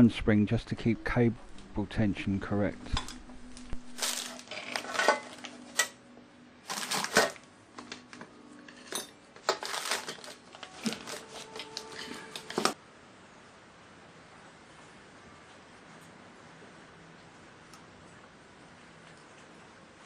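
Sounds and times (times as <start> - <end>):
metal tools clinking: 4.0 - 5.9, 8.7 - 10.3.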